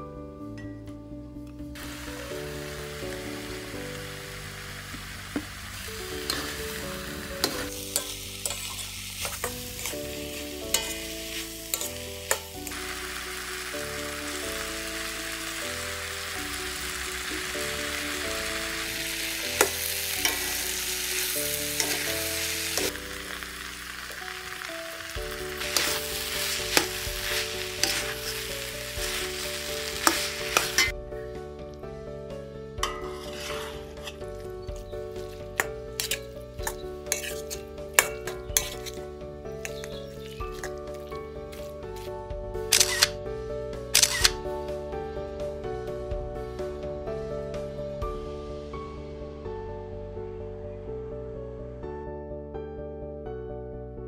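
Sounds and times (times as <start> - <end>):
soft background music: 0.0 - 54.0
vegetables sizzling in oil: 1.8 - 30.9, 32.8 - 42.1, 42.7 - 43.2, 44.0 - 44.3
spatula scraping a pan: 6.2 - 12.7, 19.6 - 22.9, 25.5 - 30.9, 32.8 - 39.0.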